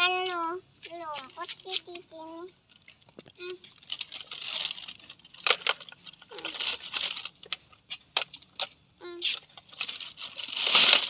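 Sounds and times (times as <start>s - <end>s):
plastic rubbish rustling: 3.6s - 11.0s.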